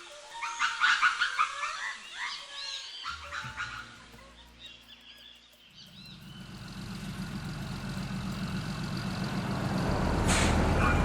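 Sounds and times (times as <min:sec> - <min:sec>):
bird chirps: 0:00.0 - 0:07.8
vehicle engine rumble: 0:05.7 - 0:11.0.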